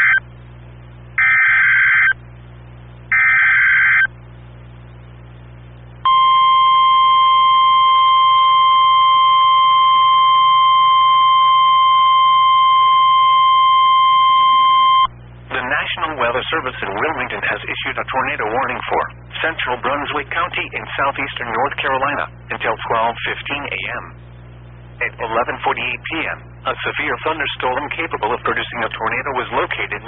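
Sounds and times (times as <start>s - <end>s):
steady warning alarm tone: 0.0s - 0.2s, 1.2s - 2.2s, 3.1s - 4.1s, 6.1s - 15.1s.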